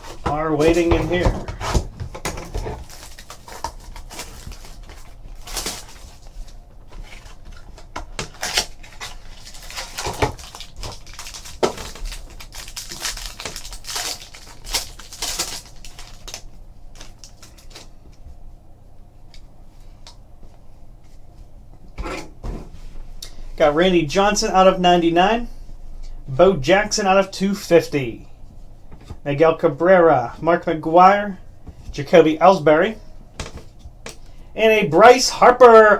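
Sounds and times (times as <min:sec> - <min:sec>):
cardboard and packaging crinkling: 0:00.0 - 0:18.0.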